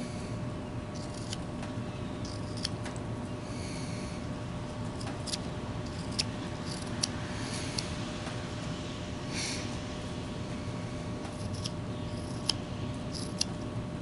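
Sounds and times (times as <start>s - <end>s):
steady background hum: 0.0s - 14.0s
knife shaving wood: 1.0s - 1.5s, 2.2s - 2.8s, 4.9s - 7.9s, 11.2s - 13.5s.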